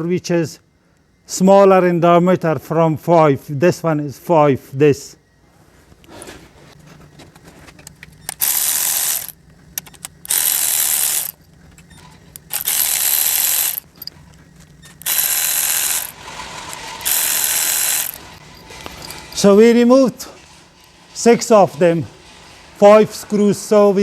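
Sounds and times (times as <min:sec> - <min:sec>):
small handling clicks: 0:07.8 - 0:16.2
ratchet wrench clicking: 0:08.3 - 0:11.4, 0:12.3 - 0:14.1, 0:15.0 - 0:16.2, 0:17.0 - 0:18.3.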